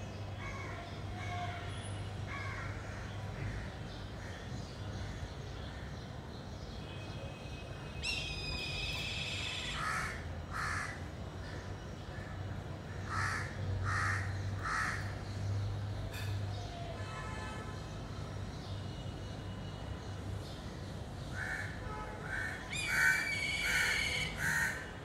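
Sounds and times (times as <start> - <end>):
crows cawing: 2.3 - 4.4, 9.6 - 11.0, 12.9 - 15.2, 21.3 - 24.9.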